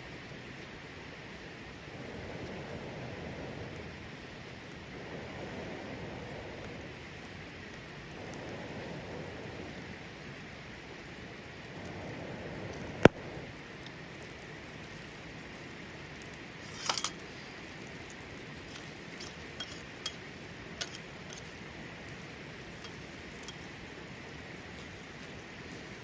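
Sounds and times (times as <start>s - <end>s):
steady hiss of rain: 0.0s - 26.0s
light clinks: 16.6s - 17.3s, 18.6s - 21.6s, 22.7s - 23.8s.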